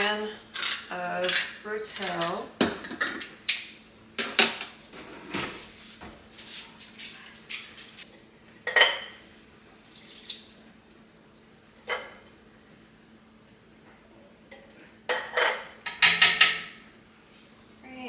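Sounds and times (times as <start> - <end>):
metal utensils clinking and scraping: 0.0 - 3.4.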